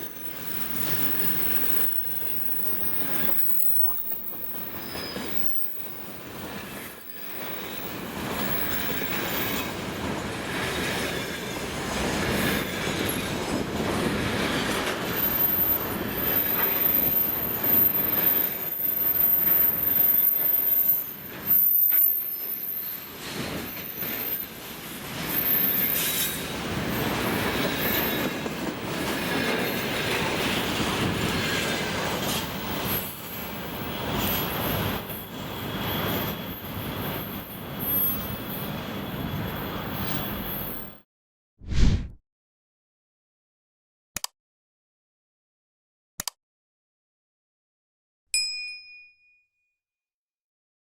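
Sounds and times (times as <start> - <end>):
train wheels rumbling on rails: 0.0 - 22.1, 22.9 - 40.5.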